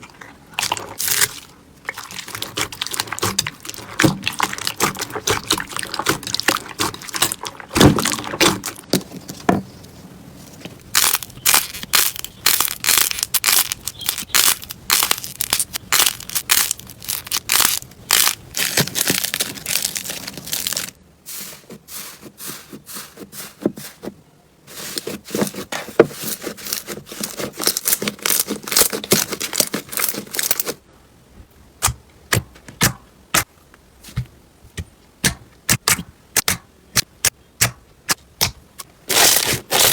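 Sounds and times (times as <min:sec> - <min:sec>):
slime crackling and popping: 0:00.6 - 0:09.0, 0:10.9 - 0:21.0, 0:26.6 - 0:30.7, 0:39.1 - 0:39.9.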